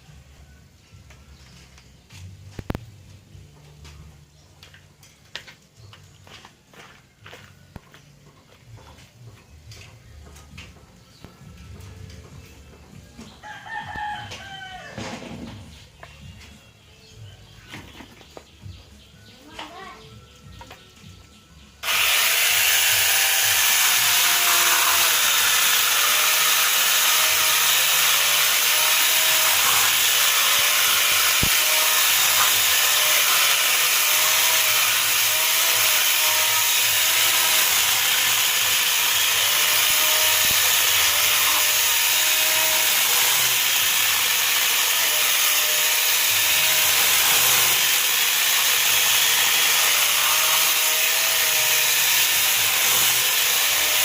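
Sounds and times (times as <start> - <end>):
electric chainsaw cutting wood: 21.8 - 54.0.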